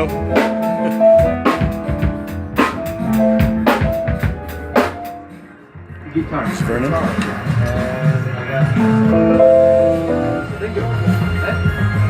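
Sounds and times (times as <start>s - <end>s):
drum kit hits: 0.0s - 5.5s, 6.2s - 11.4s
held instrumental notes: 0.0s - 12.0s.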